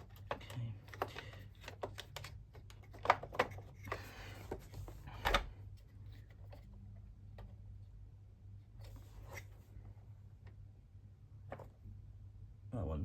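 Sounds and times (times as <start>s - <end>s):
clicks and knocks of small parts: 0.0s - 4.1s.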